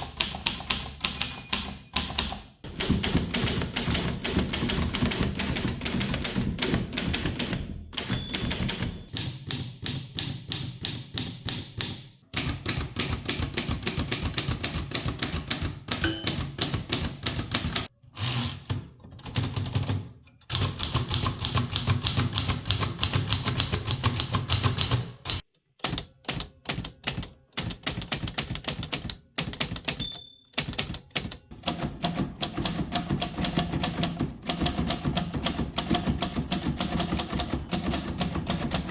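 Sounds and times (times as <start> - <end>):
mechanical typewriters typing: 0.0 - 38.9
typewriter margin bell ding: 1.1 - 2.4, 8.0 - 9.1, 16.0 - 16.7, 29.9 - 31.0.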